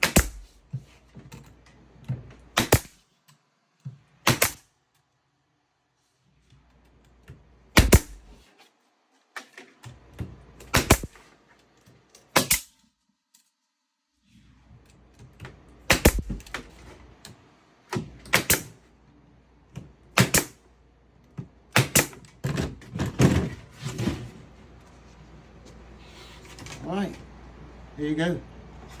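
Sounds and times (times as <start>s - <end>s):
nail gun firing into wood: 0.0s - 0.6s, 2.6s - 3.0s, 4.2s - 4.6s, 7.8s - 8.4s, 10.6s - 11.2s, 12.3s - 12.8s, 15.9s - 16.7s, 18.0s - 18.8s, 20.1s - 20.6s, 21.7s - 22.3s.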